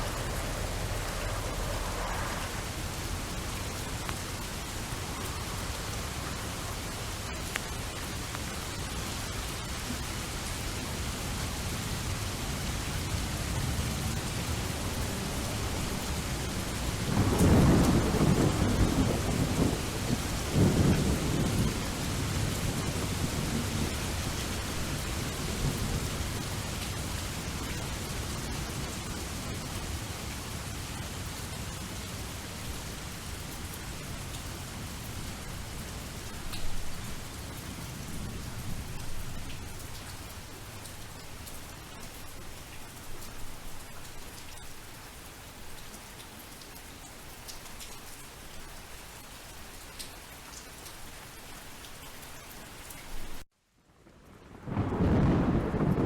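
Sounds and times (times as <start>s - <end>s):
thunder rolling: 0.0s - 6.2s, 13.6s - 26.4s, 54.3s - 56.0s
steady rain falling: 0.0s - 56.0s.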